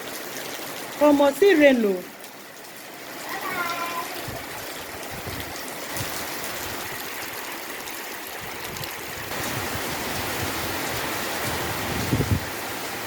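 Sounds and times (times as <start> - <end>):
water running: 0.0 - 9.6
heavy rain pouring: 0.0 - 13.0.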